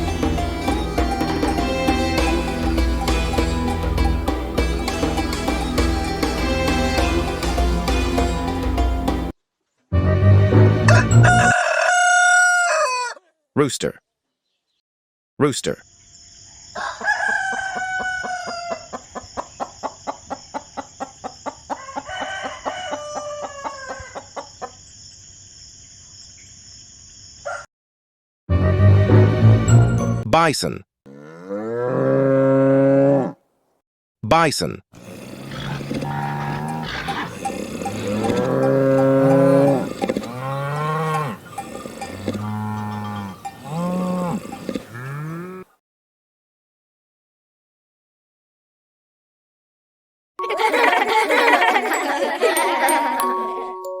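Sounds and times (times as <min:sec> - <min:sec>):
rooster crowing: 0:10.9 - 0:13.2, 0:16.8 - 0:19.1, 0:21.7 - 0:24.6
chicken clucking: 0:16.8 - 0:24.8, 0:35.5 - 0:40.4
bison bellowing: 0:35.0 - 0:45.7.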